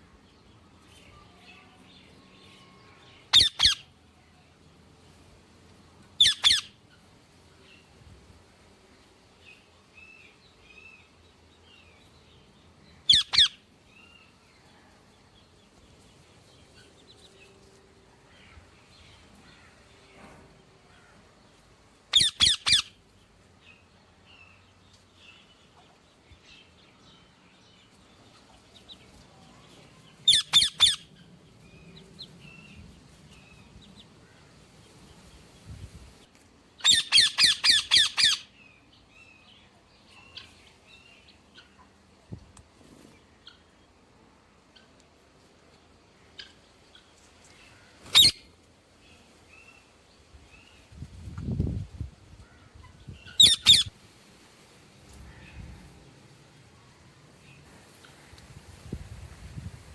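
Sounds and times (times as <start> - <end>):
parrot squawking: 3.3 - 3.8, 6.2 - 6.8, 13.1 - 13.6, 22.1 - 22.9, 30.3 - 31.1, 36.8 - 38.5, 48.1 - 48.4, 53.4 - 53.9.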